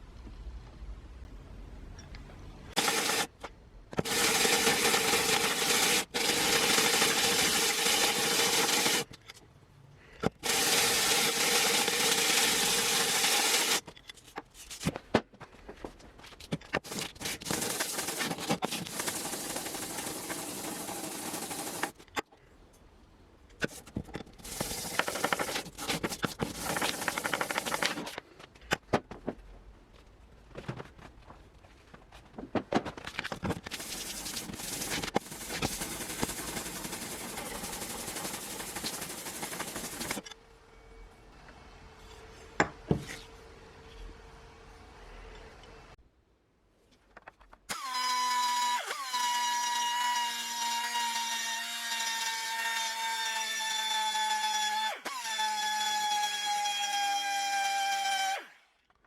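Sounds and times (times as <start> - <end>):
scraping and rubbing: 16.2 - 22.1, 23.6 - 28.4, 32.1 - 40.3.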